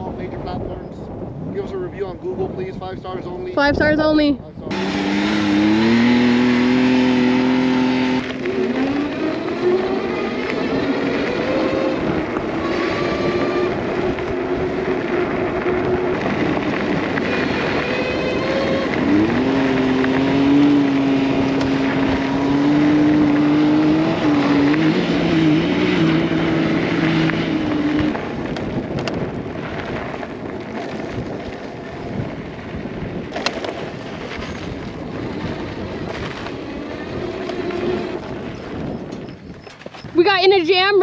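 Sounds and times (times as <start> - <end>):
vehicle motor drone: 4.7 - 32.6, 33.2 - 39.4
tyre noise on dirt: 4.7 - 41.0.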